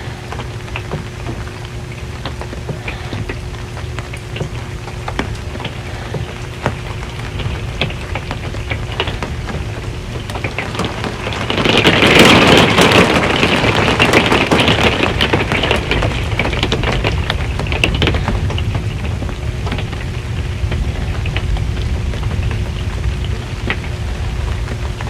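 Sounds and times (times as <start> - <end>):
rain drumming on a metal roof: 0.0 - 25.0.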